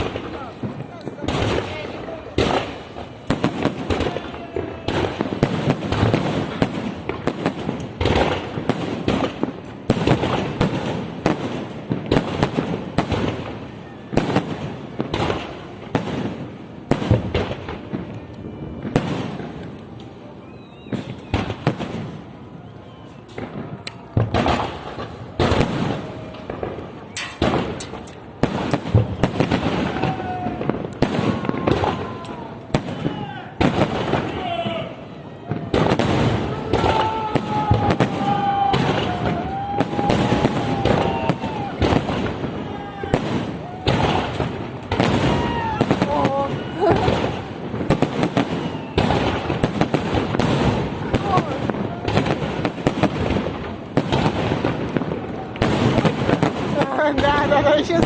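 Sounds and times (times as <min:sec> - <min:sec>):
fireworks crackling: 0:00.0 - 0:58.0
firework shells bursting: 0:23.3 - 0:34.4.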